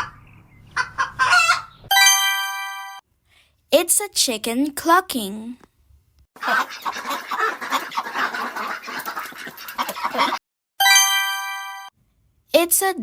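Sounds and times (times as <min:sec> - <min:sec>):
ducks quacking: 0:00.0 - 0:01.8, 0:06.4 - 0:10.4
bright chime: 0:01.9 - 0:03.0, 0:10.8 - 0:11.9.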